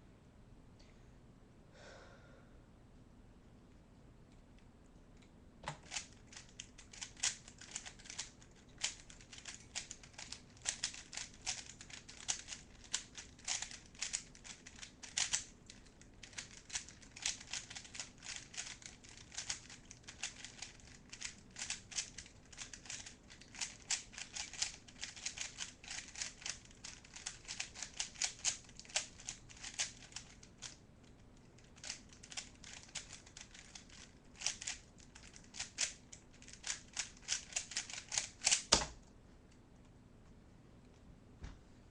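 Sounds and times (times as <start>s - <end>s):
plastic cube layers clicking: 5.7s - 30.8s, 31.6s - 39.0s.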